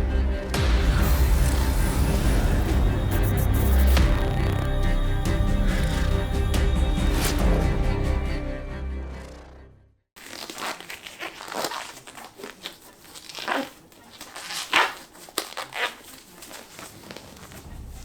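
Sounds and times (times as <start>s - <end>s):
music: 0.0s - 10.1s, 16.9s - 18.0s
packaging crinkling and rustling: 10.2s - 18.0s.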